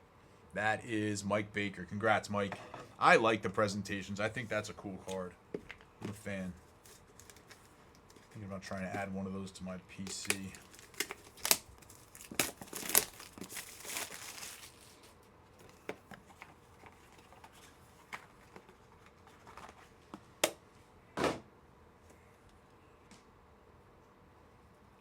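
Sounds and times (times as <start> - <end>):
plastic packaging crinkling: 6.2 - 9.0, 10.0 - 20.0.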